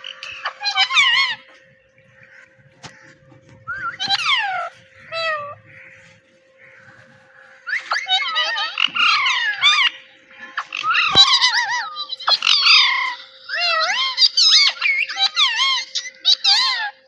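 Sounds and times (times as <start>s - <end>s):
parrot squawking: 2.9s - 6.0s, 11.0s - 17.0s.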